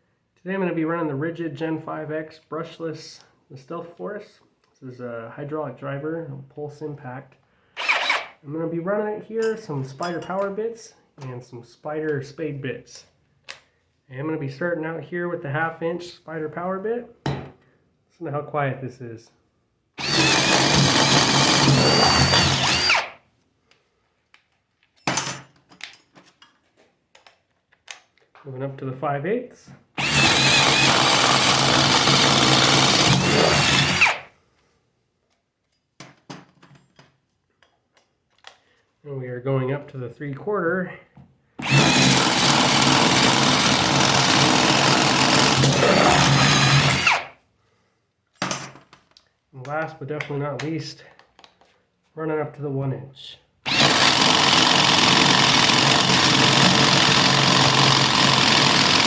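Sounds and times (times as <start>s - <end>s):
power driver spinning auger bit: 7.8s - 8.4s, 20.0s - 23.2s, 30.0s - 34.3s, 41.6s - 47.3s, 53.7s - 59.0s.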